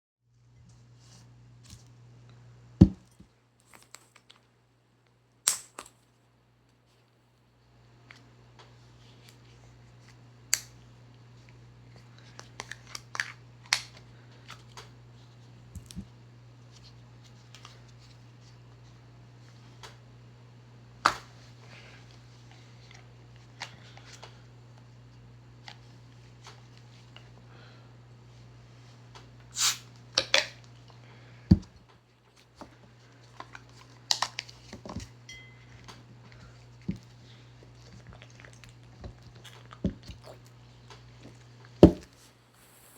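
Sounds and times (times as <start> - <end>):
small objects clicking and snapping: 5.5 - 6.0
low hum: 35.2 - 36.6.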